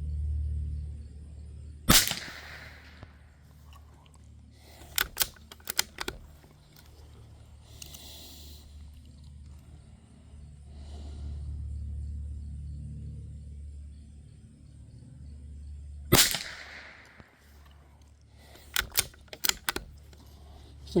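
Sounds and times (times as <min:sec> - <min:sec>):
rifle bolt metallic clicks: 0:01.9 - 0:03.2, 0:04.7 - 0:07.1, 0:07.7 - 0:08.5, 0:16.1 - 0:17.8, 0:18.6 - 0:20.4
rifle gunshot: 0:01.9 - 0:03.2, 0:16.1 - 0:17.5.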